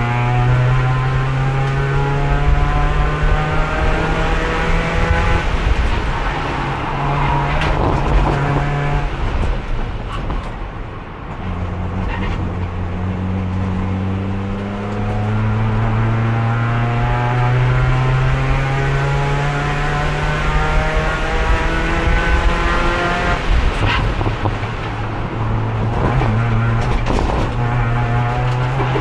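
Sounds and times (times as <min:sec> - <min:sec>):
race car engine: 0:00.0 - 0:29.0.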